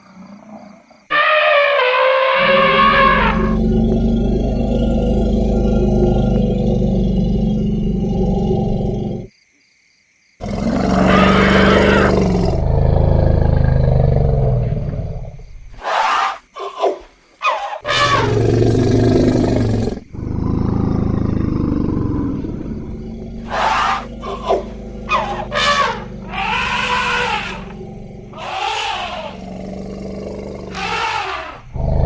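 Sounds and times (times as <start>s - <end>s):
elephant trumpeting: 1.1s - 3.6s, 17.4s - 18.4s, 22.5s - 29.6s, 30.6s - 31.7s
elephant low rumble: 1.4s - 9.3s, 10.5s - 15.7s, 17.9s - 32.0s.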